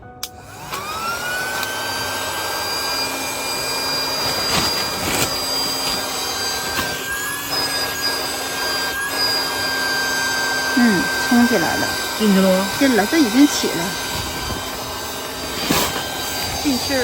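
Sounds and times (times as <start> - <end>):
electric air pump whining: 0.0 - 17.0.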